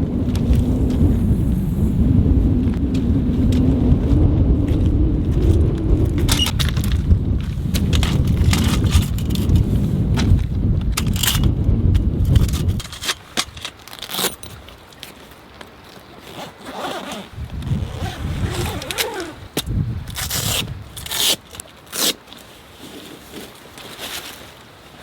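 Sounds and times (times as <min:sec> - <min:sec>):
wind buffeting microphone: 0:00.0 - 0:13.7, 0:16.7 - 0:21.3
snaps and rattles: 0:06.2 - 0:15.2.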